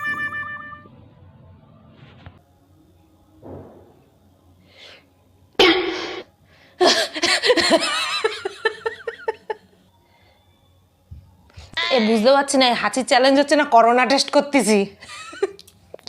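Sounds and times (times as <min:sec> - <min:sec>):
woman sneezing: 0:05.6 - 0:06.3
woman laughing: 0:06.8 - 0:09.7, 0:15.0 - 0:15.6.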